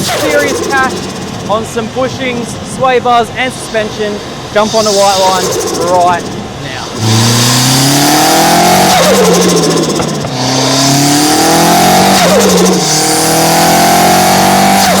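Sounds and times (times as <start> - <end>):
turbo flutter: 0.0 - 2.0, 4.6 - 13.6
car engine accelerating hard: 0.0 - 15.0.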